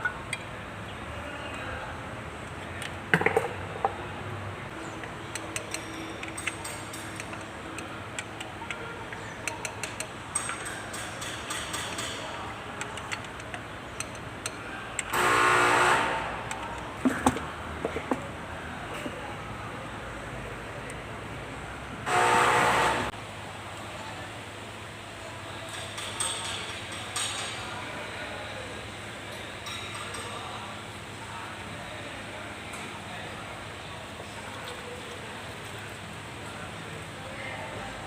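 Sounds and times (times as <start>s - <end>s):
metal tools clinking: 5.0s - 8.3s.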